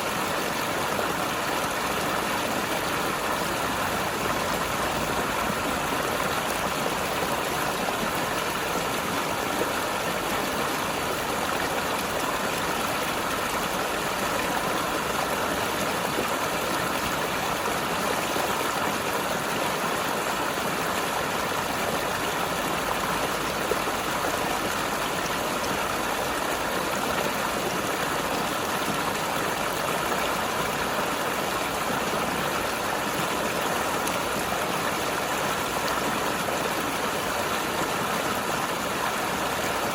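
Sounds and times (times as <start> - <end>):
river gurgling over rocks: 0.0 - 39.9.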